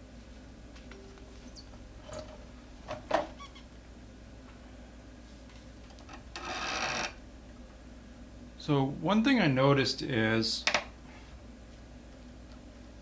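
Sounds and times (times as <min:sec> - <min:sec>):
low steady hum: 0:00.0 - 0:06.4.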